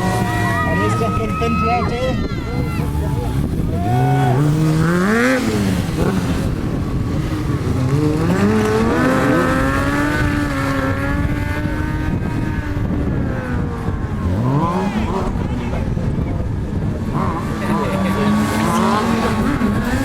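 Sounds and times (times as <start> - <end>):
motorcycle engine revving: 1.9 - 20.0.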